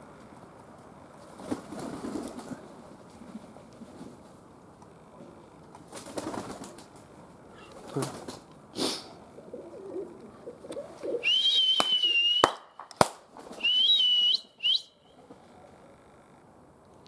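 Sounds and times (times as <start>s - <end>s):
person whistling: 11.2s - 12.6s, 13.6s - 15.0s.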